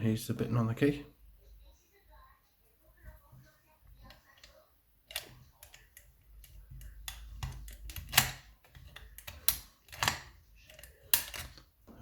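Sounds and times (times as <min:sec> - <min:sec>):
lock and key clicks: 0:05.1 - 0:11.6.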